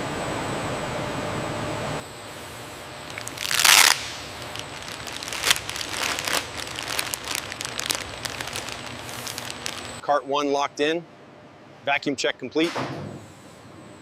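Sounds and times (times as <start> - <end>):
crinkling and clicking: 3.1 - 10.0.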